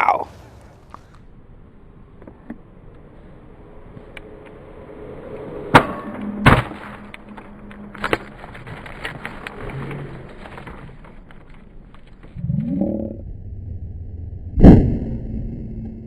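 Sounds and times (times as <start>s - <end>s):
steady hum: 12.3s - 16.0s.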